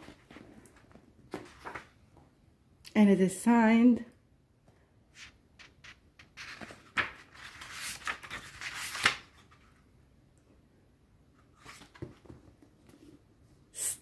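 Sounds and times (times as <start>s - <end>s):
book pages rustling: 0.0s - 2.3s, 5.2s - 9.8s, 11.4s - 13.2s.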